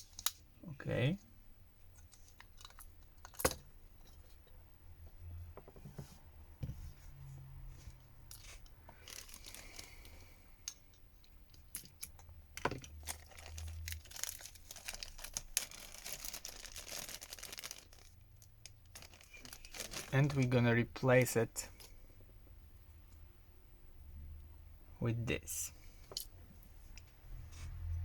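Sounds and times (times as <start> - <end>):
smartphone parts crinkling and tearing: 8.3 - 10.2, 11.5 - 20.4.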